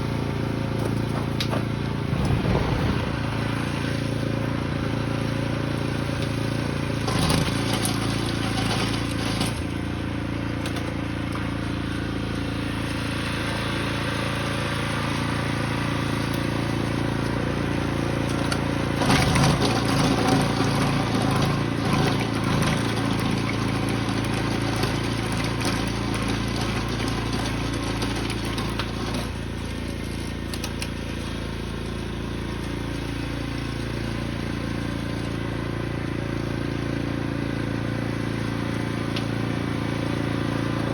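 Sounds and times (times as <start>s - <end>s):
small engine running: 0.0s - 40.9s.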